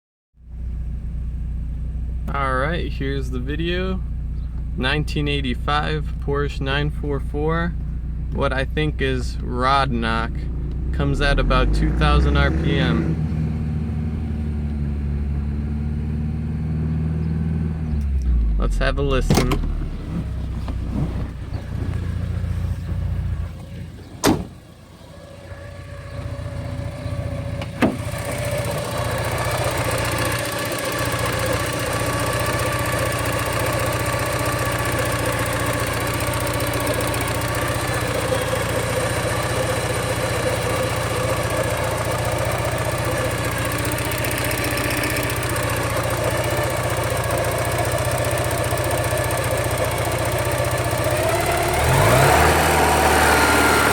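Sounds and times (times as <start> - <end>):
car engine running: 0.4 - 53.9
sharp bangs: 24.1 - 24.7.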